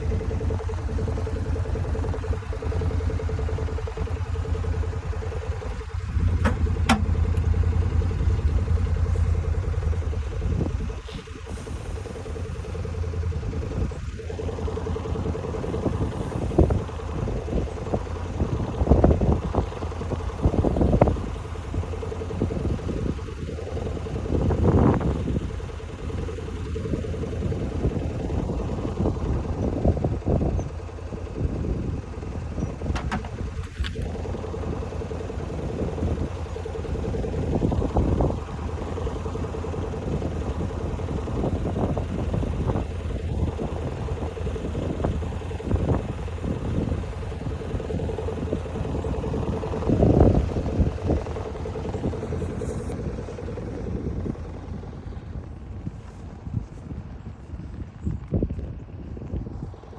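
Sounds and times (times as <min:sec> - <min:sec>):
engine running: 0:00.0 - 0:59.9
clattering and knocking: 0:06.3 - 0:07.7, 0:32.7 - 0:34.2.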